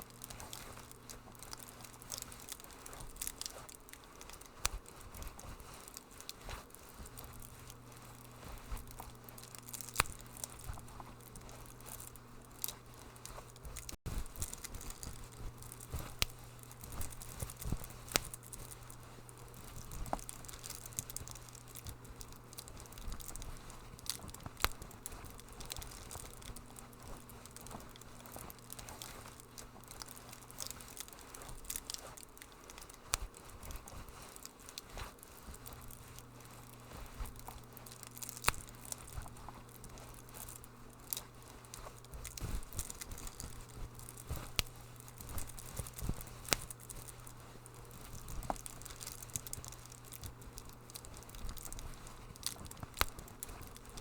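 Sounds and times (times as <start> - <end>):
steady low hum: 0.0 - 54.0
wood fire crackling: 0.0 - 54.0.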